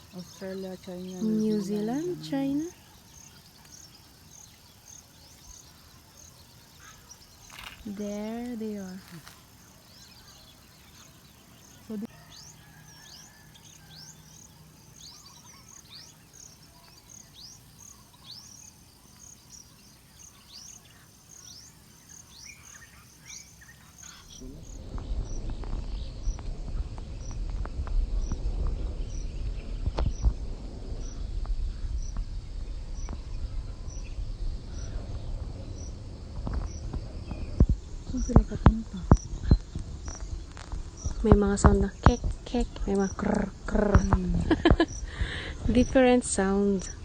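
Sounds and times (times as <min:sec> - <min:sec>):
wind rumble on microphone: 0:24.2 - 0:47.0.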